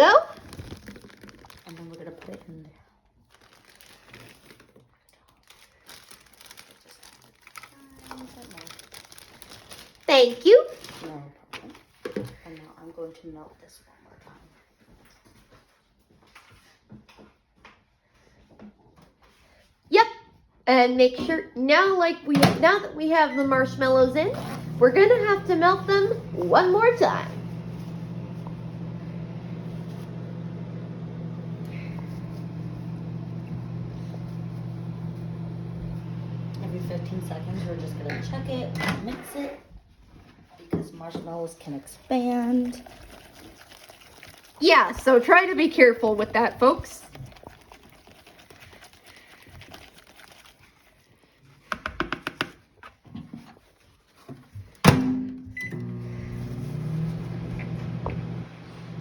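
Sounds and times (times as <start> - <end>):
microwave beep: 23.2 - 24.8, 54.9 - 57.1
microwave oven humming: 23.4 - 39.4, 54.9 - 59.0
microwave door shutting: 54.9 - 55.8.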